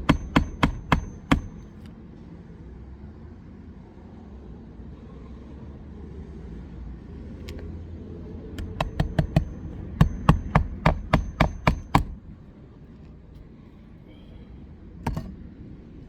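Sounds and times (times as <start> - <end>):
hammer strikes: 0.0 - 1.7, 8.6 - 12.2, 15.1 - 15.4.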